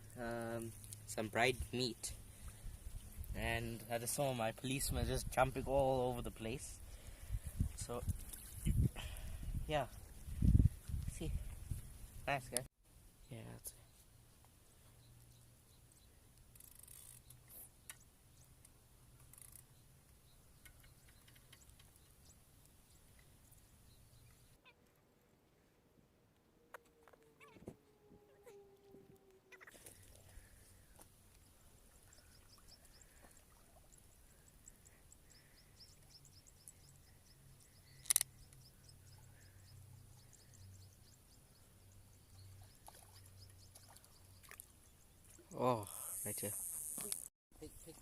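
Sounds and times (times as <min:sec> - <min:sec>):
small birds chirping: 0:13.2 - 0:24.8, 0:29.5 - 0:48.0
sharp click: 0:38.0 - 0:38.3
light clicks: 0:38.0 - 0:38.7.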